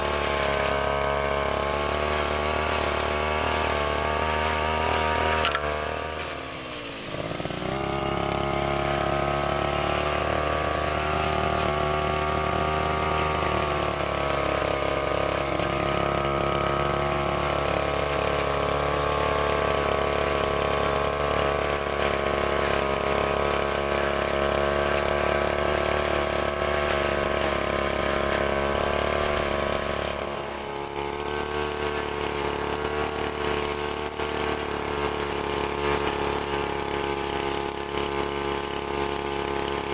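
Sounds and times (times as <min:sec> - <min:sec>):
brushcutter engine running: 0:00.0 - 0:39.9.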